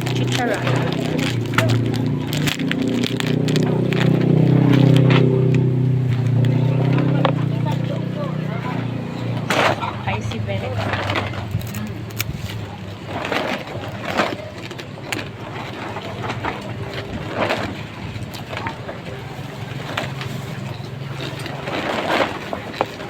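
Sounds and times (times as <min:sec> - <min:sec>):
crunching or clattering: 0:00.0 - 0:23.0.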